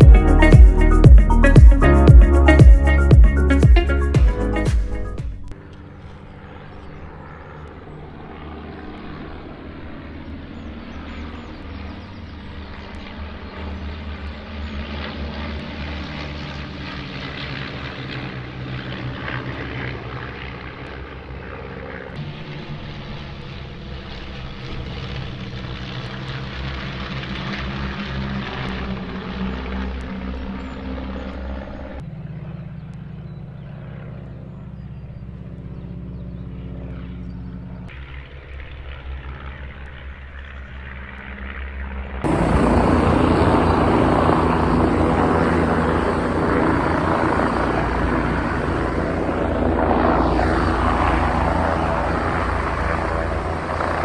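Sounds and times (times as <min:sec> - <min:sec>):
aircraft engine running: 0:00.0 - 0:54.0.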